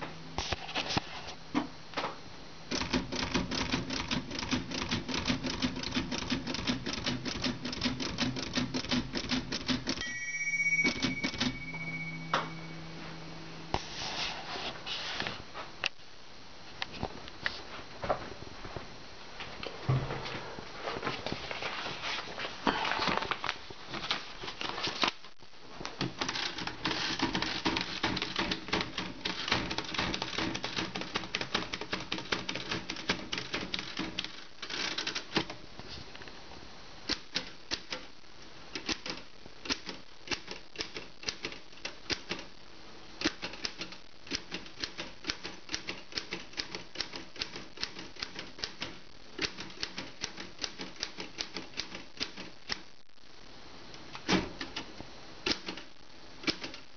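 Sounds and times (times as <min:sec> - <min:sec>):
typewriter keys clacking: 0:02.7 - 0:10.0, 0:26.1 - 0:35.5.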